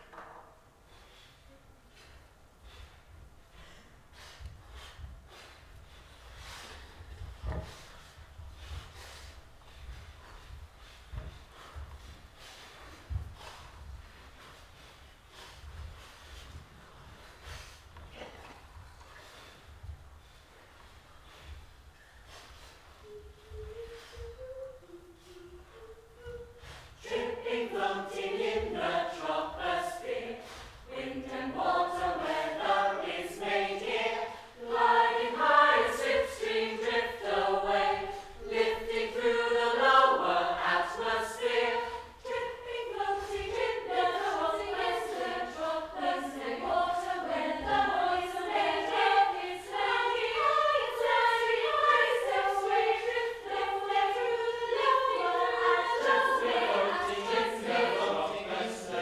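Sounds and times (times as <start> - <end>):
voices singing in harmony: 23.0 - 59.0.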